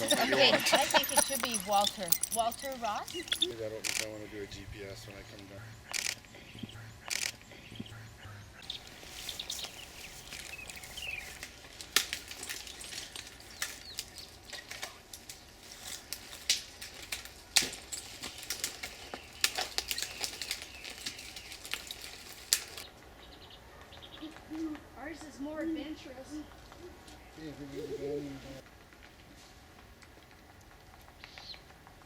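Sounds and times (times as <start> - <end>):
short chirping calls: 0.6 - 11.4
rustling with sharp clicks: 8.6 - 22.9.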